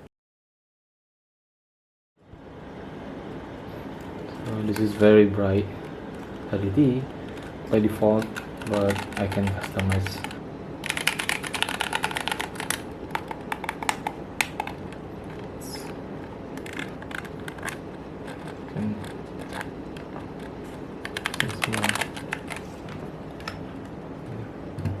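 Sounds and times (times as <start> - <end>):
mechanical keys clicking: 8.1 - 14.8, 16.6 - 22.6.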